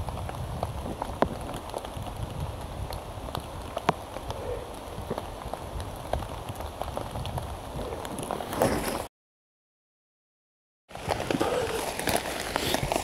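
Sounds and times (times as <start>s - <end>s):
rain drops on plastic sheet: 0.0s - 8.5s, 10.9s - 13.0s
low wind rumble: 0.0s - 9.1s.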